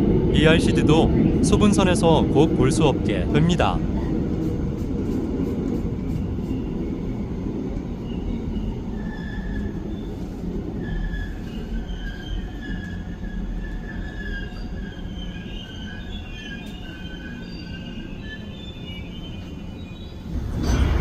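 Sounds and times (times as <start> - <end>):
electric train rumbling: 0.0 - 21.0
high wavering wheel squeal: 6.0 - 21.0.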